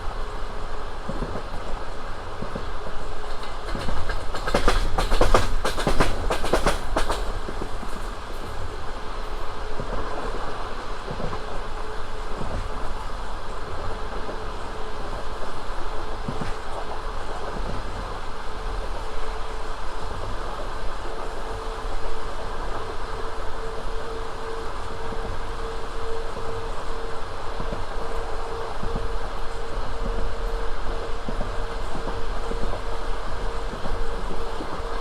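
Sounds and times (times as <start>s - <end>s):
train wheels rolling on rails: 0.0s - 35.0s
knocks from rail joints: 3.3s - 8.6s.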